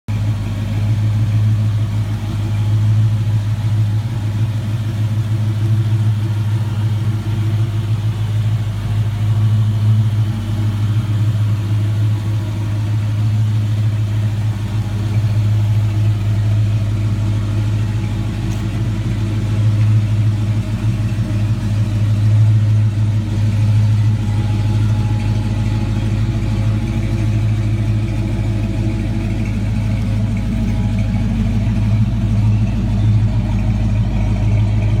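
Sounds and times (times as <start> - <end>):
vehicle engine running: 0.0 - 35.0.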